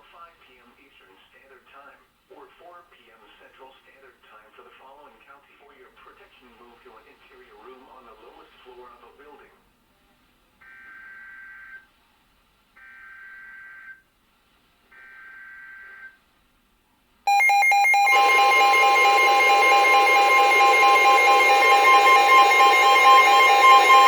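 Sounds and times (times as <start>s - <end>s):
digital data bursts: 17.3s - 24.0s
loud steady alert tone: 17.3s - 24.0s.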